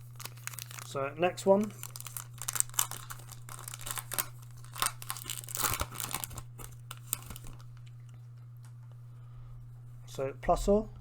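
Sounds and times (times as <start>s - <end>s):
foil wrapper tearing and crinkling: 0.0s - 1.0s, 1.6s - 7.9s.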